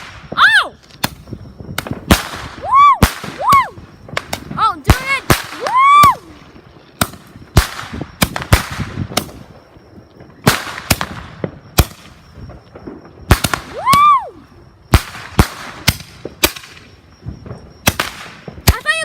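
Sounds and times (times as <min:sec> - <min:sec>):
fireworks bangs: 0:00.0 - 0:19.0
person shouting woo: 0:00.4 - 0:00.8, 0:02.6 - 0:03.8, 0:05.6 - 0:06.4, 0:13.7 - 0:14.4.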